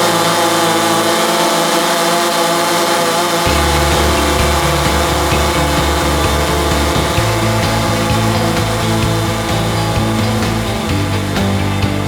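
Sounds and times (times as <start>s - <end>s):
background music with light beat: 3.5s - 12.0s.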